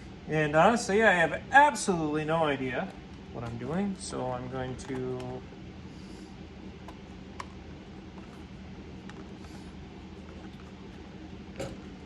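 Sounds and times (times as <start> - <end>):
low background hum: 0.0 - 12.0
handling clicks and creaks: 4.6 - 5.4.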